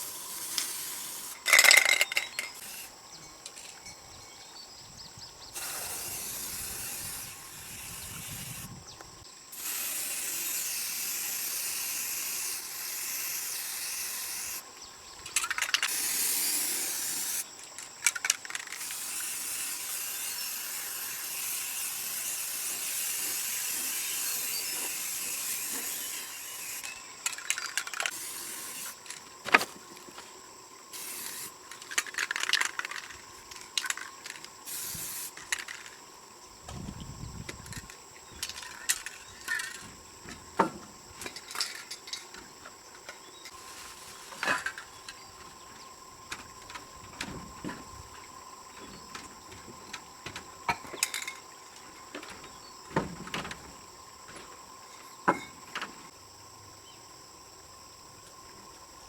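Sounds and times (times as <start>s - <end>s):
hissing spray: 0.0s - 1.4s, 5.6s - 8.7s, 9.5s - 14.6s, 15.9s - 17.4s, 18.8s - 26.8s, 28.1s - 29.0s, 30.9s - 31.6s, 34.7s - 35.4s
clicks and rattles: 1.4s - 2.6s, 15.2s - 15.9s, 17.7s - 18.8s, 26.8s - 28.2s, 31.7s - 34.5s, 35.4s - 36.0s, 37.5s - 43.6s.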